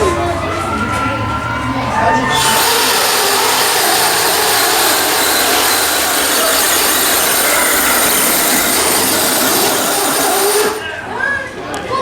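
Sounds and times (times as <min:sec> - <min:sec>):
small engine running at high speed: 0:02.3 - 0:10.8.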